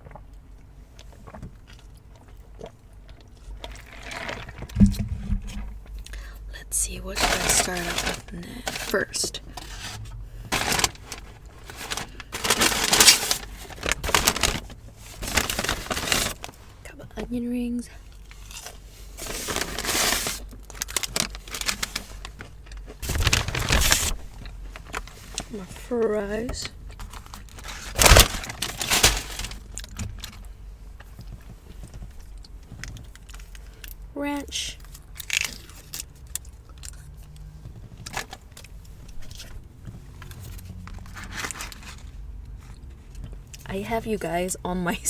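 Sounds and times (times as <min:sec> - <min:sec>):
car idling hum: 0:04.9 - 0:17.4
paper bag and wrappers rustling: 0:06.9 - 0:16.7, 0:18.3 - 0:30.5, 0:38.0 - 0:42.7
food containers clicking and rattling: 0:07.2 - 0:16.6.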